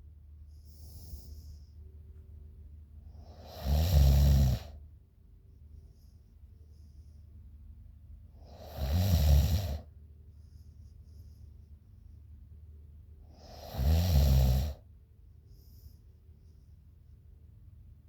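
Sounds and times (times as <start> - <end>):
faint breathing: 0.4 - 1.8, 15.5 - 16.1
woman snoring: 3.2 - 4.8, 8.4 - 9.9, 13.4 - 14.8.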